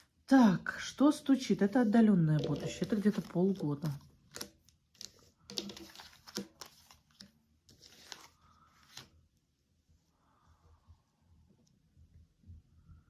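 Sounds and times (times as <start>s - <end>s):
cards slapping and rustling: 2.4s - 9.2s.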